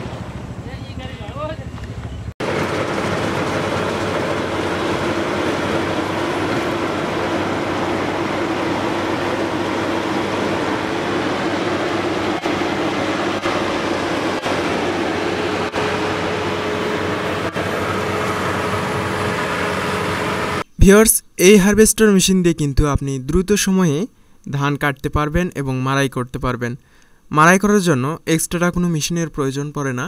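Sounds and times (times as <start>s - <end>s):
combine harvester running: 0.0s - 20.7s.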